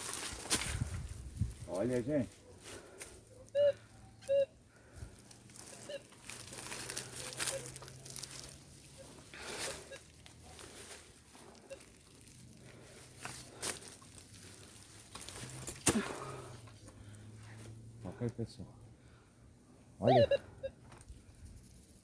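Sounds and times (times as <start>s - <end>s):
rustling of dry undergrowth: 0.0s - 18.4s
metal detector beeps: 3.5s - 4.6s, 5.6s - 6.2s, 8.9s - 10.1s, 20.0s - 20.8s.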